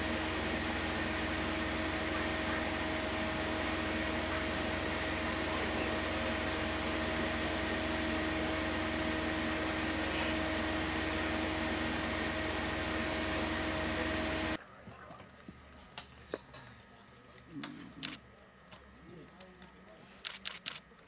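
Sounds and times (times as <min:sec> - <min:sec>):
mechanical running noise: 0:00.0 - 0:14.6.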